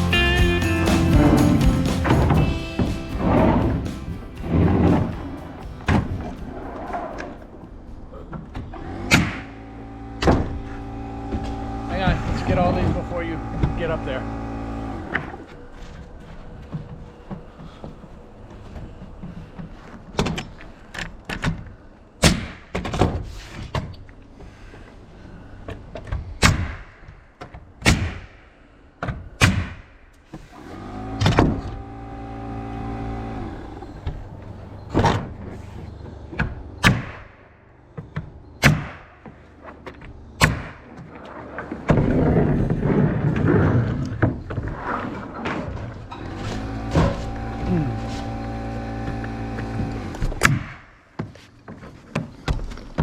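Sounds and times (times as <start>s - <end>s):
steady low rumble: 0.0s - 8.7s
nails hammered into roof: 27.8s - 28.4s, 29.1s - 29.9s, 36.8s - 37.3s, 38.6s - 39.3s.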